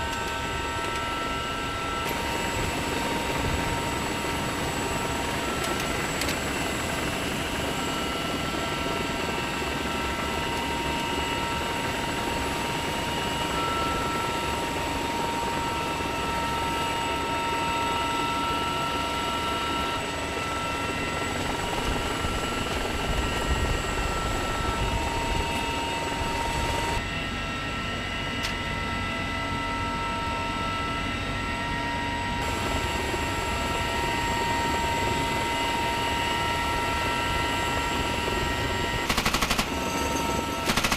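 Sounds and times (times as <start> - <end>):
helicopter rotor noise: 0.0 - 40.9
turbine engine whine: 0.0 - 40.9.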